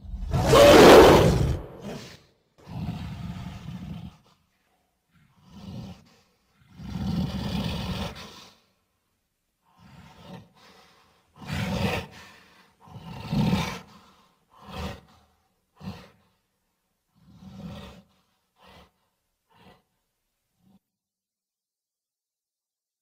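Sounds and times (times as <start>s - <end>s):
gorilla roars and grunts: 0.0s - 4.2s, 12.8s - 13.9s.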